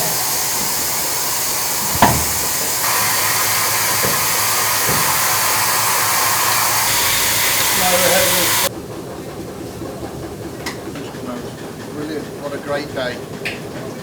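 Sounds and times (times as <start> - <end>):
steam hissing: 0.0 - 8.7.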